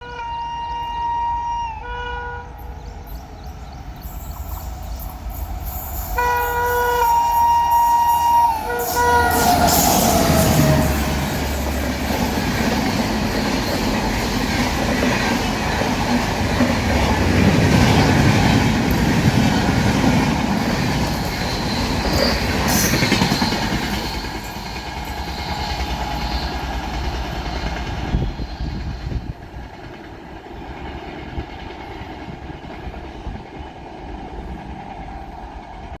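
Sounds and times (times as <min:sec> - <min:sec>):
locomotive horn: 0:00.0 - 0:02.5, 0:06.2 - 0:11.8
train wheels on rails clickety-clack: 0:03.0 - 0:36.0.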